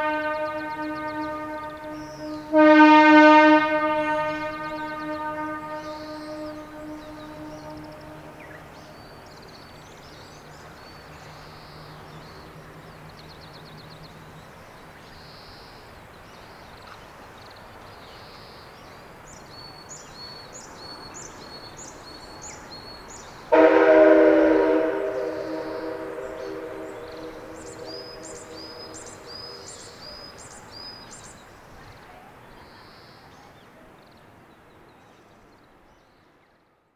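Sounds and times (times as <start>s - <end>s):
train horn blast: 0.0s - 9.2s, 23.5s - 30.2s.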